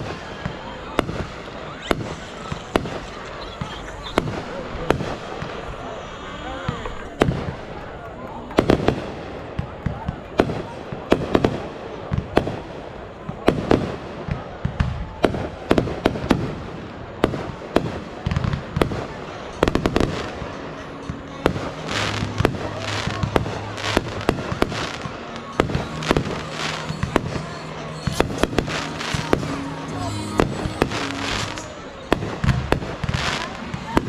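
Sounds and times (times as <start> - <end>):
fireworks bangs: 0.0 - 34.0
music: 18.2 - 34.0.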